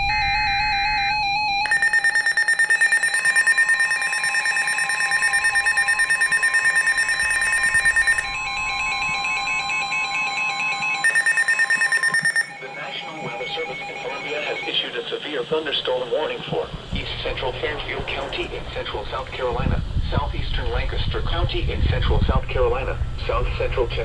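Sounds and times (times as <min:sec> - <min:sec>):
high alarm beep pulsing: 0:00.0 - 0:14.8
steady warning alarm tone: 0:00.0 - 0:15.1.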